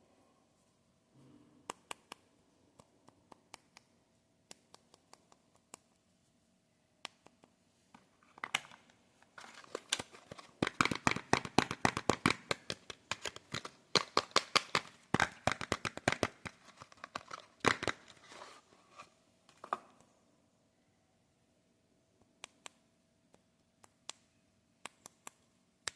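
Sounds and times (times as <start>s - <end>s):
soap wrapper crinkling: 8.5s - 18.6s.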